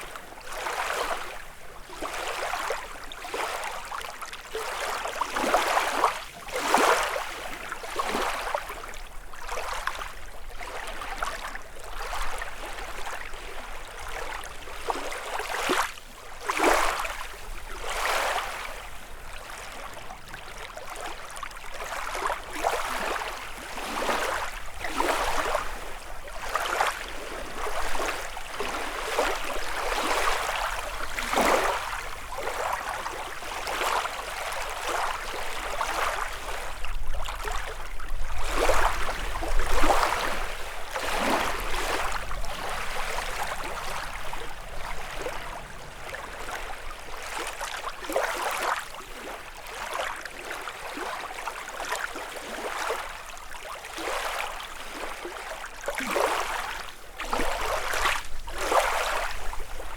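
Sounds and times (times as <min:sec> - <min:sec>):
waves lapping against shore: 0:00.0 - 0:59.9.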